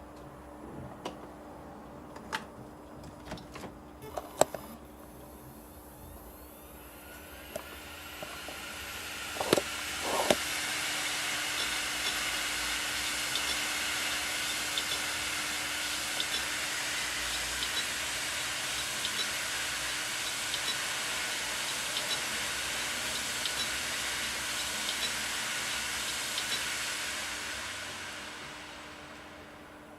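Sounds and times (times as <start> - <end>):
hard drive whirring: 4.0 - 27.5.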